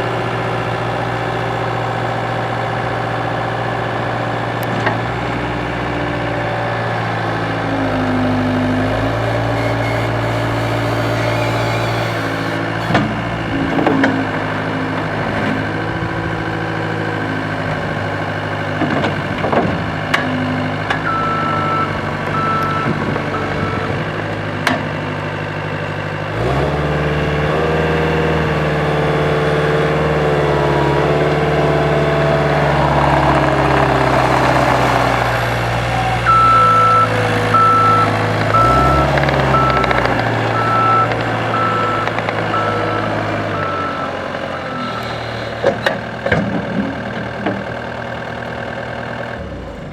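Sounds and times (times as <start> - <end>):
diesel engine running: 0.0 - 49.9
reversing alarm beeps: 21.0 - 24.0, 36.1 - 45.6.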